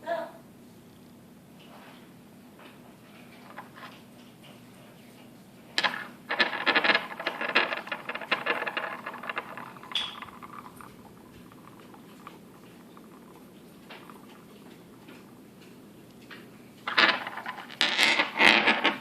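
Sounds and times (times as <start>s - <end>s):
magnets clicking and rattling: 5.8s - 15.4s.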